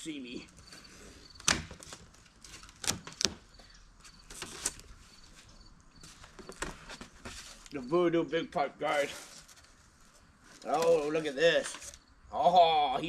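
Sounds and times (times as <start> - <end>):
packing rustling: 0.6 - 7.8, 8.8 - 12.0.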